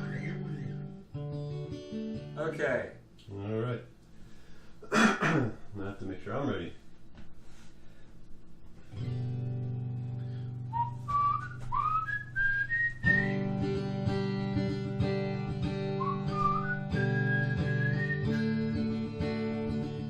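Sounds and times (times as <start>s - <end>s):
whistled melody: 0.0s - 1.0s, 10.5s - 13.8s, 15.7s - 19.5s
acoustic guitar strumming: 0.0s - 2.6s, 8.9s - 20.0s.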